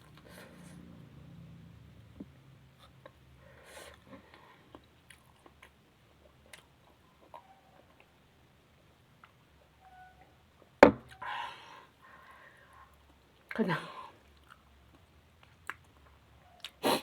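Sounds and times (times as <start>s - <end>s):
person chewing: 3.9s - 8.1s, 14.2s - 17.0s.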